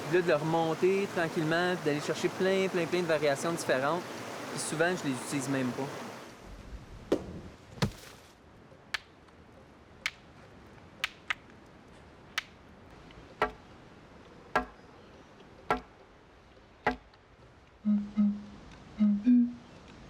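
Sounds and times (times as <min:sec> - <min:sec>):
club knocking on wood: 0:14.6 - 0:14.8, 0:15.7 - 0:15.9, 0:16.9 - 0:17.1.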